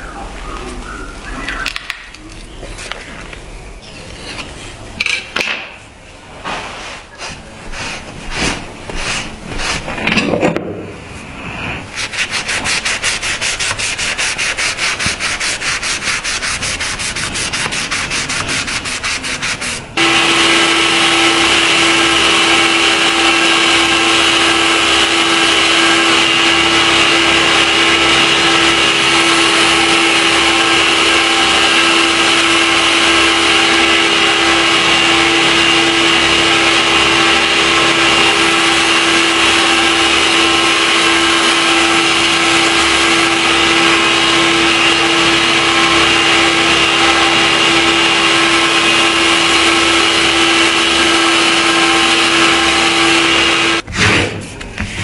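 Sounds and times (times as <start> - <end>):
sanding strokes on steel blade: 11.9 - 19.9
power sander humming: 20.0 - 53.8.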